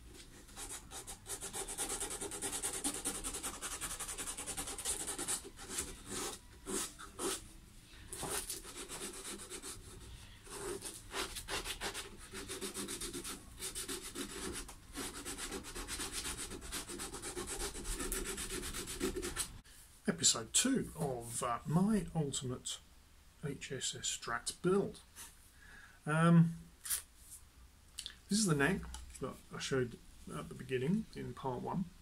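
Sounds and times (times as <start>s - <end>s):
sandpaper rubbing on wood: 10.6s - 19.6s.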